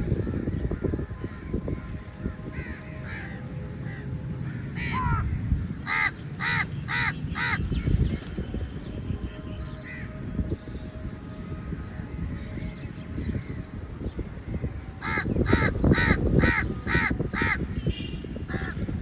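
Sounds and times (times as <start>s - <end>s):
crows cawing: 2.6s - 7.6s, 15.0s - 17.6s, 18.5s - 18.9s.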